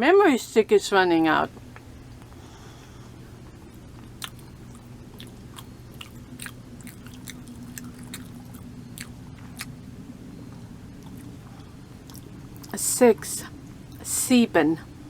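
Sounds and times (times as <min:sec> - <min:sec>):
person chewing crunchy bread: 0:03.4 - 0:09.8, 0:10.5 - 0:12.8.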